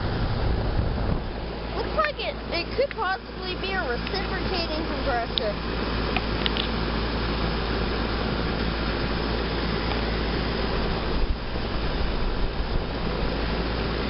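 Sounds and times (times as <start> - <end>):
air conditioner fan rushing: 0.0 - 14.0
compressor humming: 0.0 - 14.0.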